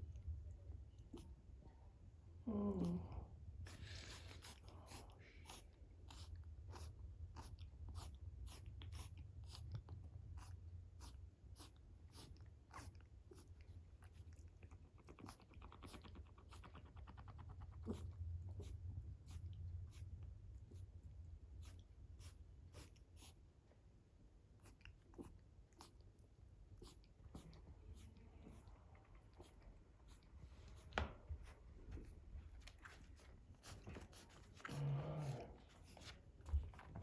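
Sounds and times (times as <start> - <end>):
low room hum: 0.0 - 37.0
rabbit chewing crunches: 3.6 - 23.5.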